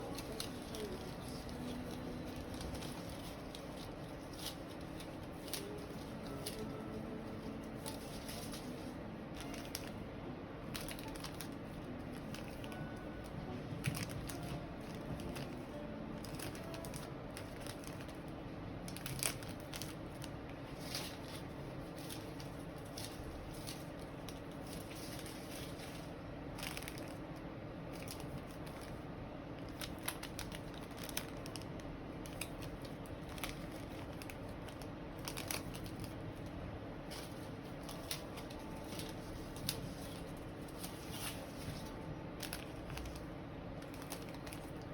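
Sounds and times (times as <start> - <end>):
small clicks and crinkling: 0.0 - 10.0, 10.7 - 44.9.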